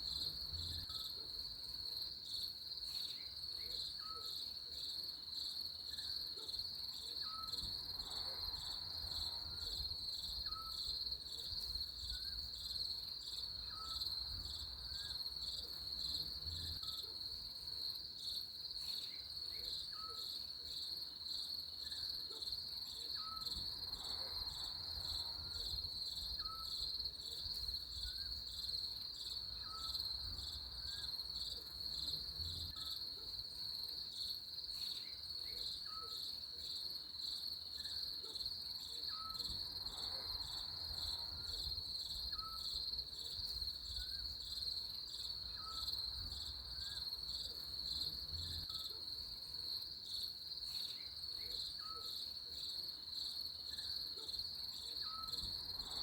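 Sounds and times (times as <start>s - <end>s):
crickets chirping: 0.0s - 56.0s.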